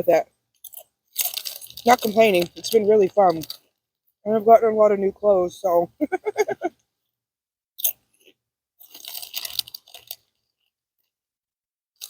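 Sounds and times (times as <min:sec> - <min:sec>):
chewing and crunching sandwich: 0:00.7 - 0:03.7, 0:07.8 - 0:10.7.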